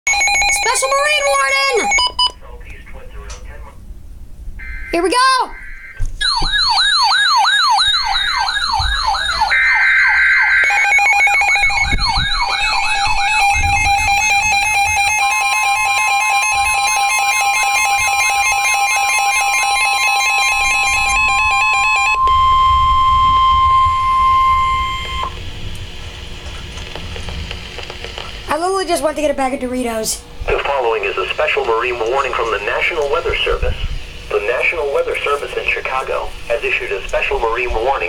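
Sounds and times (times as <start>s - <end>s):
fast-pulsing alarm beep: 0.1s - 2.3s, 4.6s - 25.4s
siren wailing: 0.1s - 2.3s, 4.6s - 25.6s
emergency alert attention tone: 0.1s - 2.4s, 4.6s - 25.4s
electronic data screech: 4.6s - 25.4s.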